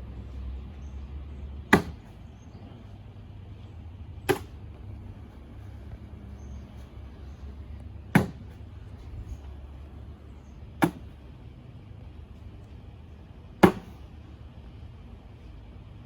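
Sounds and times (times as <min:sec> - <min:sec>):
bean bags thudding on board: 0:01.7 - 0:02.2, 0:08.1 - 0:08.6, 0:10.8 - 0:11.2, 0:13.6 - 0:14.0.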